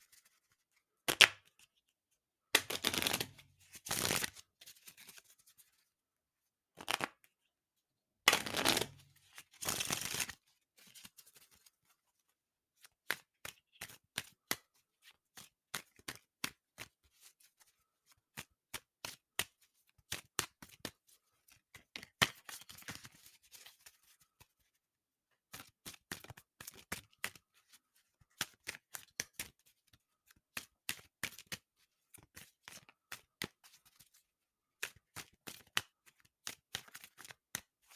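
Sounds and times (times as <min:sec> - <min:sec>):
card clicks and snaps: 0:01.1 - 0:01.4, 0:02.6 - 0:04.3, 0:06.8 - 0:07.2, 0:08.3 - 0:09.0
playing cards shuffling: 0:02.6 - 0:05.4, 0:06.8 - 0:07.2, 0:08.3 - 0:09.0, 0:09.6 - 0:10.4.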